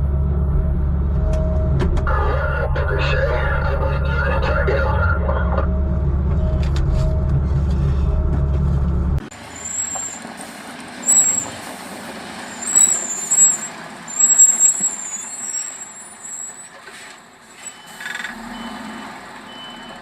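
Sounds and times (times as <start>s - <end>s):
diesel truck engine rumbling: 0.0s - 20.0s
short high-pitched squeals: 9.6s - 10.2s, 11.0s - 11.6s, 12.6s - 16.8s, 17.6s - 18.3s.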